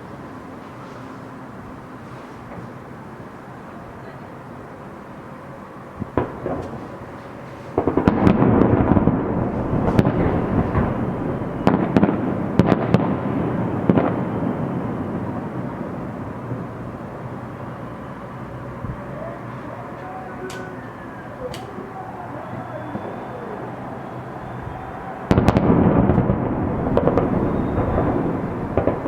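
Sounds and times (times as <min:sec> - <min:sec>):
sharp firework cracks: 0:06.0 - 0:07.0, 0:07.7 - 0:16.2, 0:25.3 - 0:29.0
fireworks bursting: 0:06.0 - 0:29.0.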